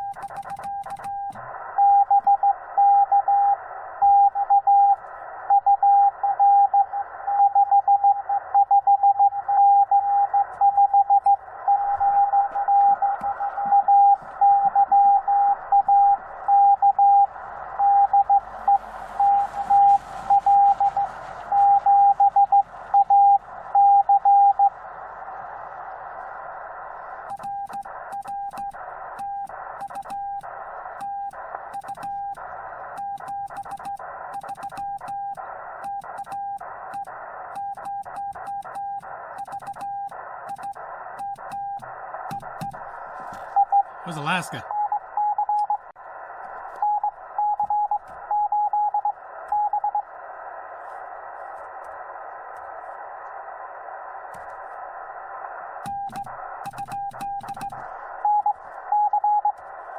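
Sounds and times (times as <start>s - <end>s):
morse code beeps: 0.0s - 24.7s, 43.5s - 45.8s, 46.8s - 50.0s, 55.9s - 59.6s
radio receiver hiss: 17.3s - 23.8s, 39.0s - 44.6s.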